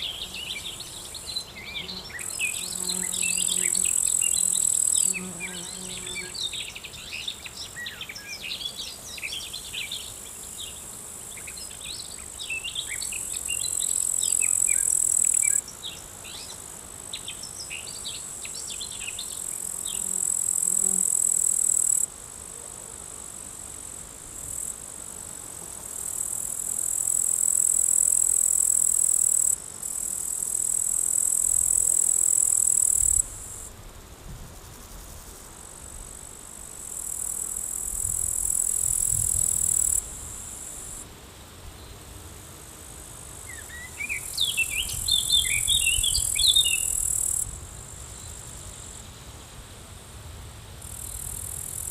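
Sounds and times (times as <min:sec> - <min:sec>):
insects buzzing: 0:00.0 - 0:51.9
small birds chirping: 0:43.5 - 0:47.1.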